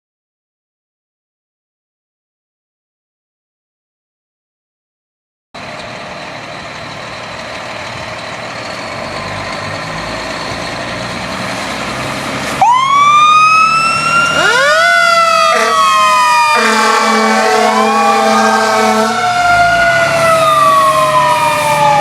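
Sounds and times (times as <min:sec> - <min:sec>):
fire truck engine and road noise: 0:05.6 - 0:22.0
siren sweeping up and down: 0:12.5 - 0:22.0
low horn blast: 0:14.3 - 0:22.0.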